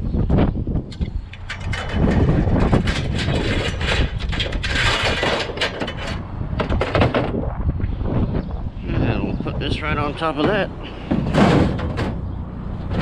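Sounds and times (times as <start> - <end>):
scrap metal clanking and scraping: 0.9 - 7.4, 10.1 - 13.0.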